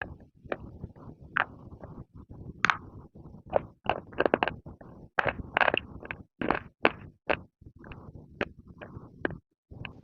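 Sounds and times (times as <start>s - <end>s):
chewing crunchy clay: 3.5s - 4.6s, 5.2s - 8.0s.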